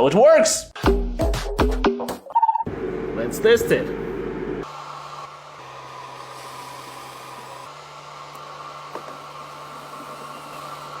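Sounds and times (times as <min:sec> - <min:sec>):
small electric motor humming: 0:04.6 - 0:11.0.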